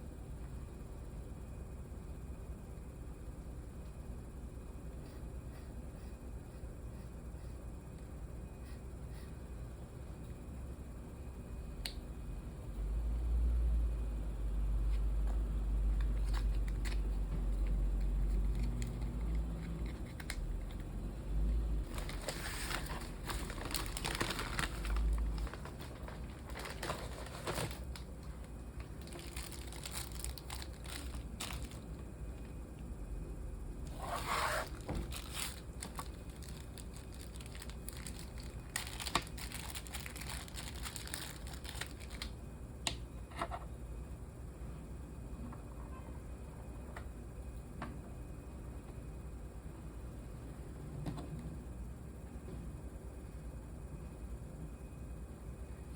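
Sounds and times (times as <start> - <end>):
crinkling and rustling: 21.8 - 32.0, 33.9 - 42.4.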